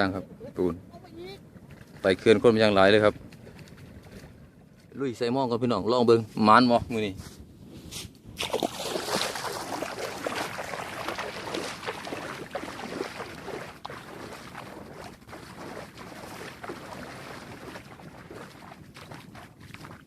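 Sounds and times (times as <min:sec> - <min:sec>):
river water rushing and splashing: 0:08.4 - 0:19.9.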